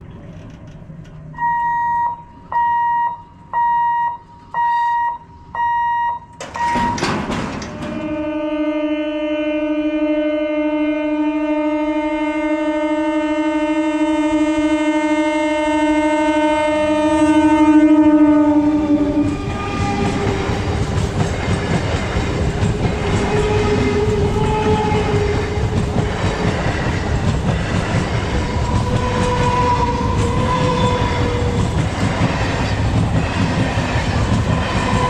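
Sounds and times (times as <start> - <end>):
electronic warning beeper: 1.4 - 7.1
train horn blast: 7.8 - 20.4, 22.9 - 25.8, 28.4 - 31.7.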